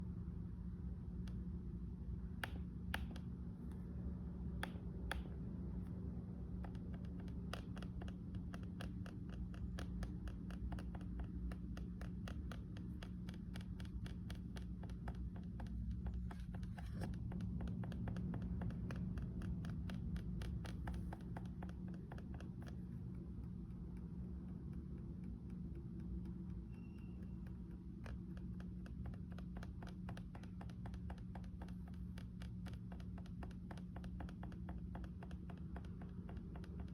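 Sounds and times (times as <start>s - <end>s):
steady low hum: 0.0s - 36.9s
touchpad tap clicks: 2.4s - 3.8s, 4.6s - 5.4s, 25.1s - 36.9s.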